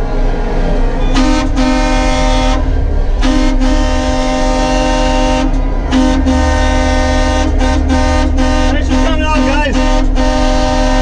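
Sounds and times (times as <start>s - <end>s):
low engine rumble: 0.0s - 11.0s
truck horns honking: 0.0s - 11.0s.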